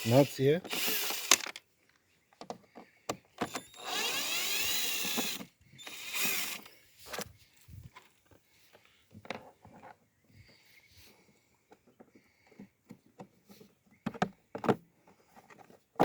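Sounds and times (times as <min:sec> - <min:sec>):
ratchet tool turning: 0:00.0 - 0:01.5, 0:03.5 - 0:06.6.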